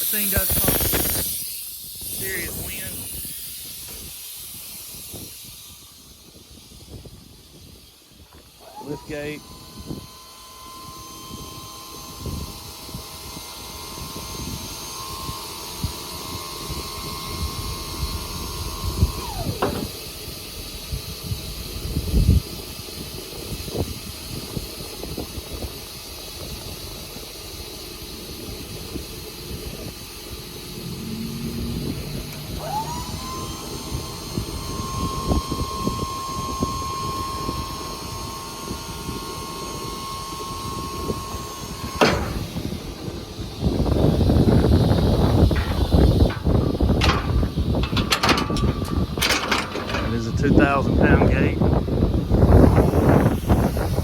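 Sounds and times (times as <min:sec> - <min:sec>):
hydraulic pump motor whining: 0:00.0 - 0:54.0
loud clunk: 0:19.6 - 0:20.0, 0:41.9 - 0:42.8, 0:44.4 - 0:50.6.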